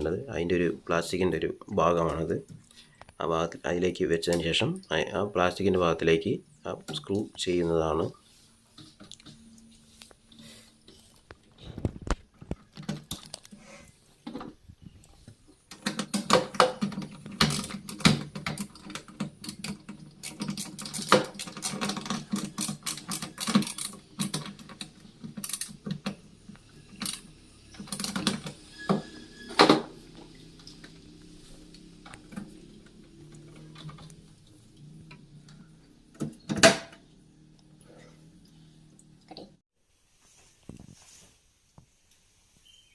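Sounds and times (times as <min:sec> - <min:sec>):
plastic parts clicking and knocking: 0:11.4 - 0:13.6, 0:15.7 - 0:26.2, 0:36.1 - 0:37.0.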